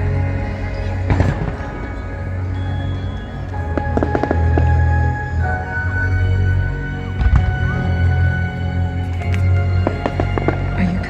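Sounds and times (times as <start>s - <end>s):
music playing: 0.0s - 11.0s.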